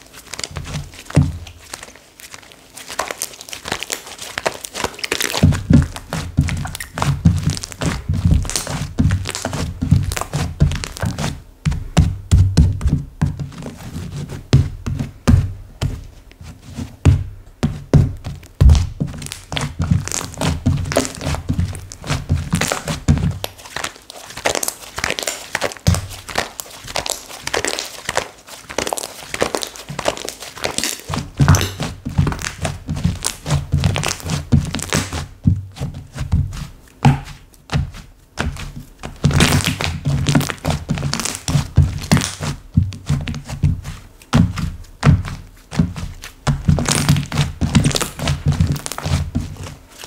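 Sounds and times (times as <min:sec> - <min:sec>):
slime crackling and popping: 0:00.0 - 0:11.4, 0:18.2 - 0:35.4, 0:36.8 - 0:50.0
soft thuds: 0:14.4 - 0:23.3.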